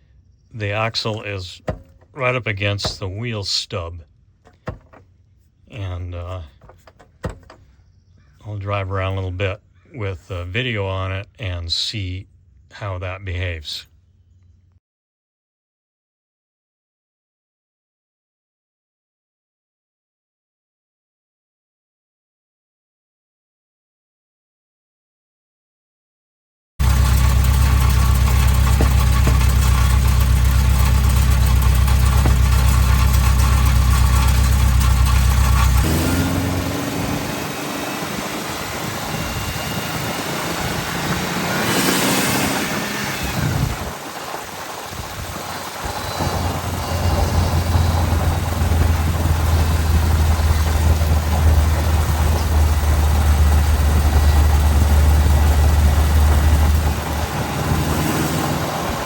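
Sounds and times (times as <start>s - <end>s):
noisy rushing: 26.8s - 59.0s
van engine hum: 26.8s - 59.0s.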